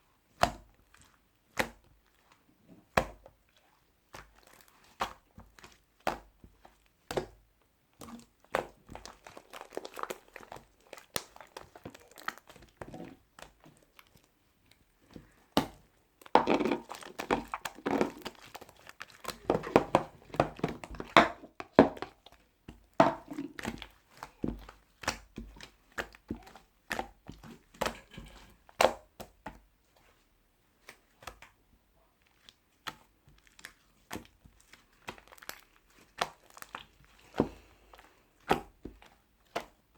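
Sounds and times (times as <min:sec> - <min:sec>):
crinkling and rustling: 0:08.0 - 0:31.6, 0:32.2 - 0:39.9.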